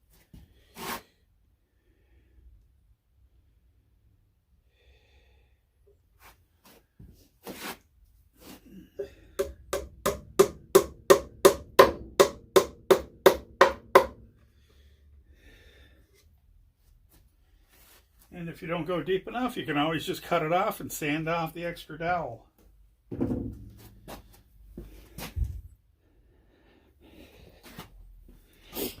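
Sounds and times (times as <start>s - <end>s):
hammer tapping wooden dowel: 9.4s - 14.2s.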